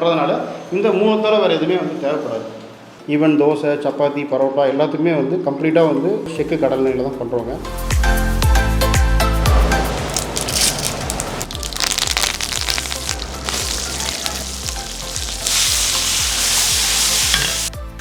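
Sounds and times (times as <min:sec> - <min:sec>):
food sizzling in hot oil: 0:09.6 - 0:17.7.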